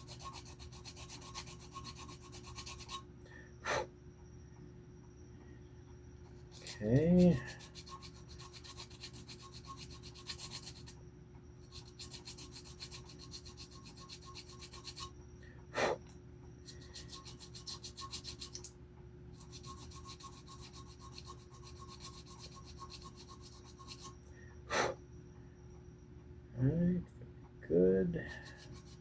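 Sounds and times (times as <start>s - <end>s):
hand file rasping: 0.0s - 3.0s, 6.5s - 11.0s, 11.6s - 15.1s, 16.7s - 18.7s, 19.4s - 24.2s, 28.3s - 29.0s.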